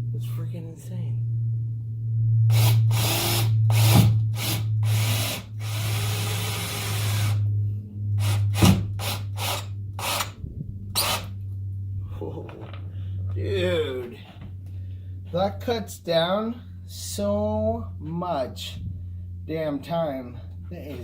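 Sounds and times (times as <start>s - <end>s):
steady low hum: 0.0s - 21.0s
power drill driving screws: 2.5s - 7.4s, 8.2s - 10.3s, 11.0s - 11.3s.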